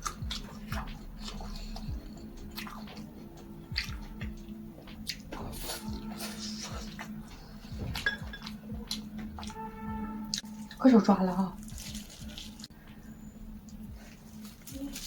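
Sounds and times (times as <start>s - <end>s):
person chewing food: 0.0s - 10.8s, 11.6s - 12.7s
low steady hum: 0.0s - 15.0s.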